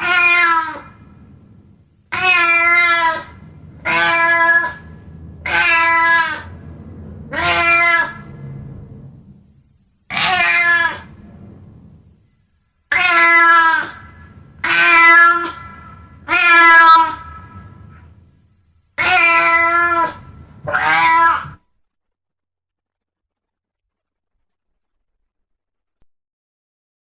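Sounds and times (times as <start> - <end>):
cat meowing: 0.0 - 1.1, 2.1 - 6.6, 7.3 - 8.4, 10.1 - 11.2, 12.9 - 18.0, 19.0 - 21.6.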